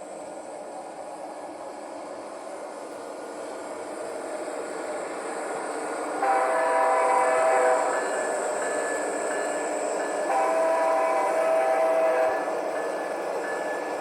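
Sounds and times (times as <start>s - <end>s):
model train running: 0.0s - 14.0s
model train horn blast: 6.2s - 8.0s, 10.3s - 12.5s.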